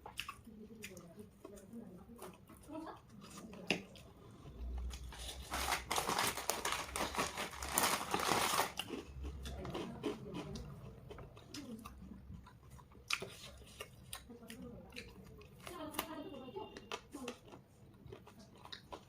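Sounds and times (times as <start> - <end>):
crunching crispy fried chicken: 4.6 - 16.2.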